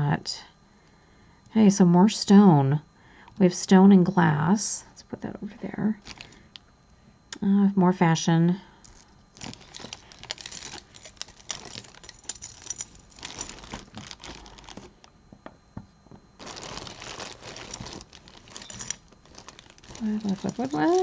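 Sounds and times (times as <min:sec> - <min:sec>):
bag rustling and crinkling: 0:06.0 - 0:06.5, 0:08.8 - 0:15.1, 0:16.4 - 0:21.0
beads and metal clinking: 0:08.9 - 0:14.9, 0:16.4 - 0:21.0.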